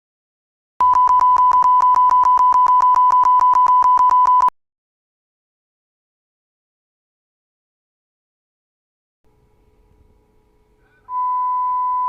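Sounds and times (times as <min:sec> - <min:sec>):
electronic beep tone: 0:00.8 - 0:04.5, 0:11.1 - 0:12.0.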